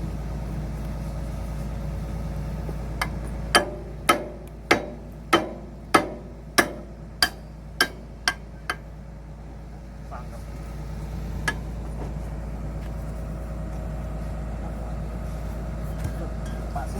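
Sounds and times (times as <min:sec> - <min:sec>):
low engine hum: 0:00.0 - 0:16.9
hammer blows on steel: 0:03.0 - 0:08.9.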